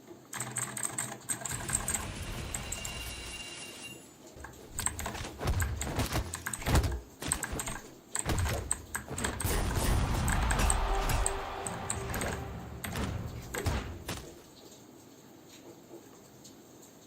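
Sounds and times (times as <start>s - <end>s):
clicky keyboard keystrokes: 4.4s - 9.6s.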